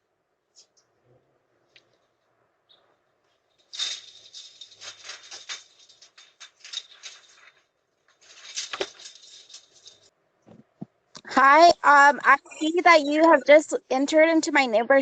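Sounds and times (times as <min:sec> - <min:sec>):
rustling and tapping: 0:01.7 - 0:13.6.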